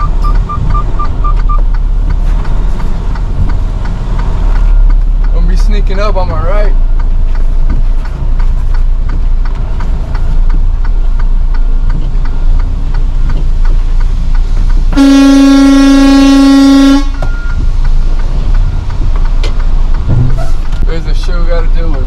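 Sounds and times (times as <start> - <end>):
truck engine running: 0.0 - 22.0
vehicle horn blast: 14.9 - 17.3.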